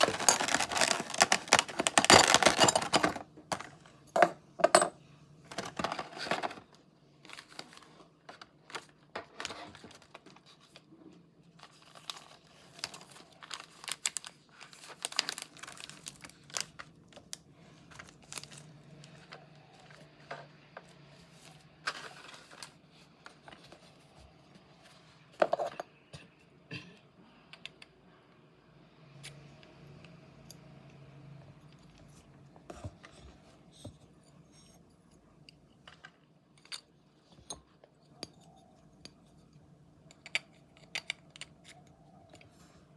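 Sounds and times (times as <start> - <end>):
paper and plastic rustling: 0.0 - 4.0, 5.5 - 25.2.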